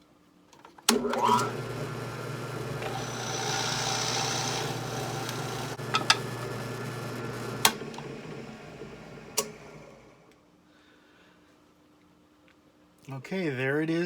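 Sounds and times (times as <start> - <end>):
drill press motor humming: 0.9 - 10.4.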